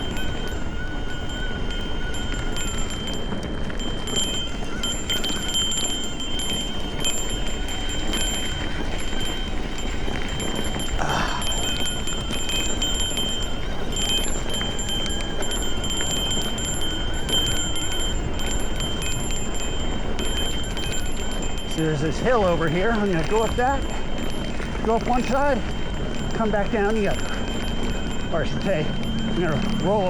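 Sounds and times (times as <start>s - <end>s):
high metallic ringing: 0.0s - 30.0s
tyres and wind rumbling: 0.0s - 30.0s.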